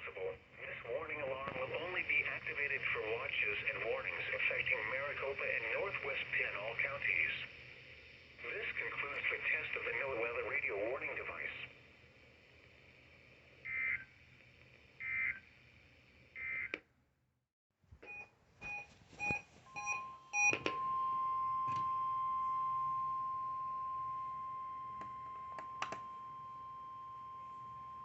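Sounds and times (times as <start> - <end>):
short electronic beeps and clicks: 18.0 - 20.8
steady warning alarm tone: 18.1 - 28.0.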